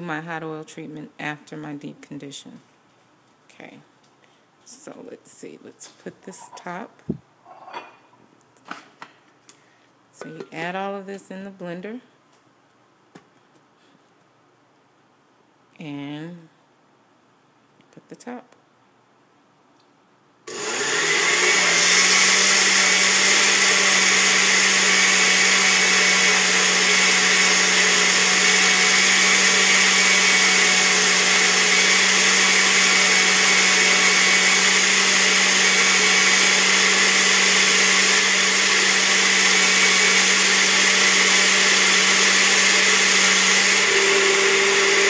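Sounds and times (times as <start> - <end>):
blender motor running: 20.5 - 45.0.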